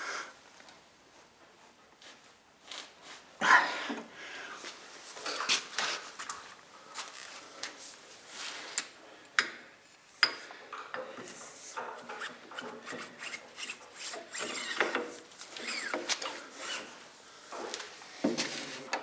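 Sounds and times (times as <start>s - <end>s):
rubbing and scraping of tools: 10.0s - 18.9s.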